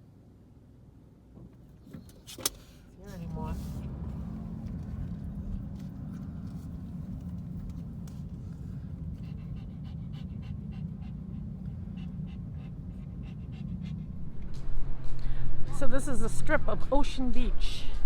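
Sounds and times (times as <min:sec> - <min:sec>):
car rumbling on the road: 0:01.2 - 0:18.0
dog panting: 0:04.6 - 0:14.5.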